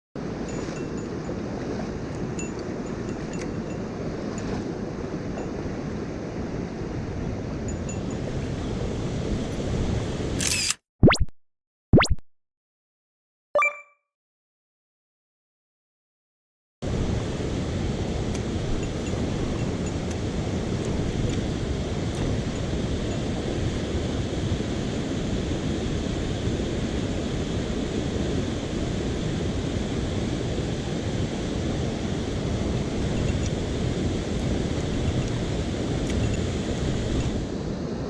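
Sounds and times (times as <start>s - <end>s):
stream water rushing: 0.2s - 10.2s, 16.8s - 27.4s, 28.2s - 38.0s.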